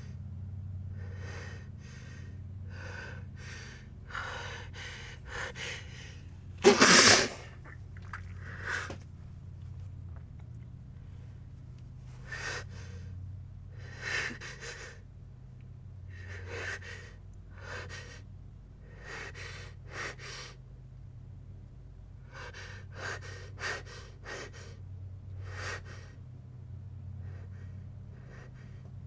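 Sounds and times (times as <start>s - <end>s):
steady low hum: 0.0s - 29.0s
person gasping breathily: 2.7s - 7.5s.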